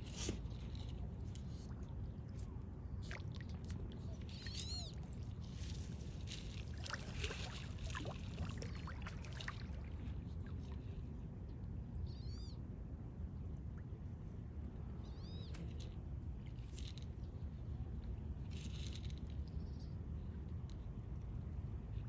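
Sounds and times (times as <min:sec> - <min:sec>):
water splashing and sloshing: 0:01.0 - 0:11.0.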